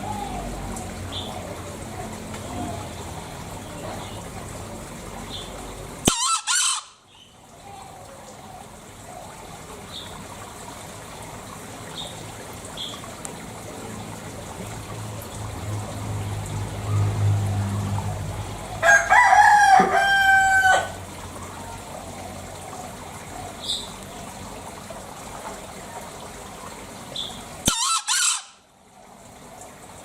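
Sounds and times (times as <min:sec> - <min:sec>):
junglefowl crowing: 0:06.0 - 0:07.0, 0:18.7 - 0:21.1, 0:27.6 - 0:28.6.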